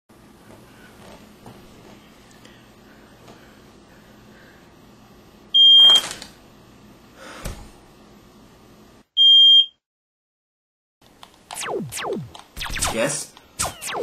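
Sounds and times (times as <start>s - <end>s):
smoke alarm beeps: 5.6s - 6.0s, 9.2s - 9.8s.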